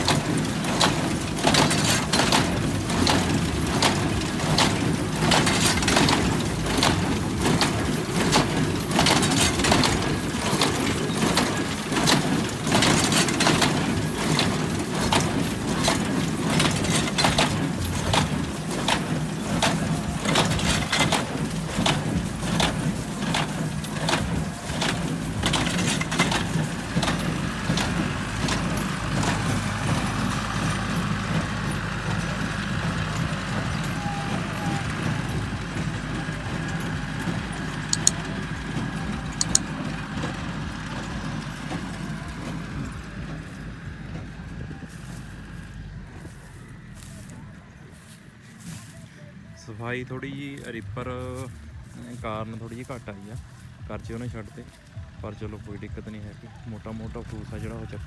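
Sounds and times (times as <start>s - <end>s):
baler knocking rhythmically: 0.0s - 44.6s
tractor engine running: 0.0s - 58.0s
sharp clicks: 37.8s - 38.5s, 39.3s - 39.8s.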